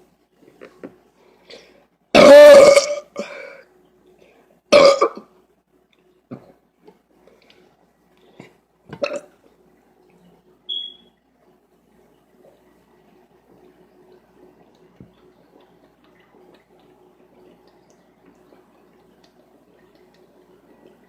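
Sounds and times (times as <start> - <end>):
woman burping: 2.2 - 3.6, 4.7 - 5.3, 9.0 - 9.3.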